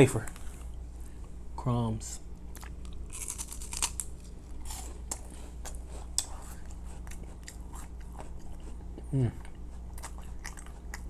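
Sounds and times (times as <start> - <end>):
snack wrapper crinkling: 2.6 - 5.8.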